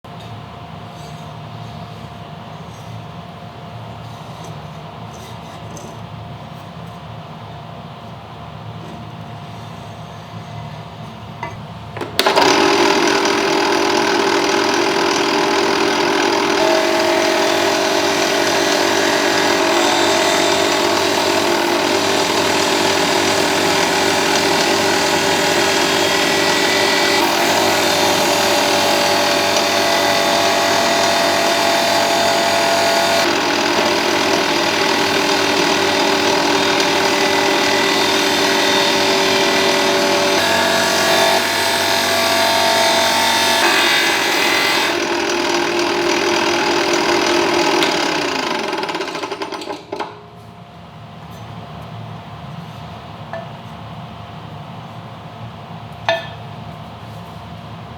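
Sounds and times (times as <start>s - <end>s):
power sander motor hum: 12.2s - 49.7s
rough abrasive scraping: 12.8s - 43.0s.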